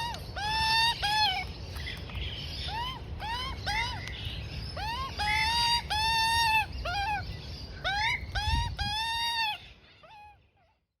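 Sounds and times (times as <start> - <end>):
young magpie begging calls: 0.0 - 1.5, 2.6 - 4.1, 4.7 - 10.4.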